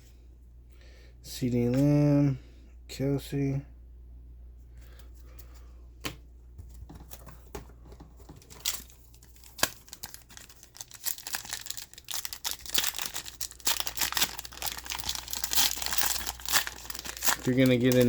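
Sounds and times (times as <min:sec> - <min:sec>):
wrapper tearing and crinkling: 0:08.6 - 0:18.0.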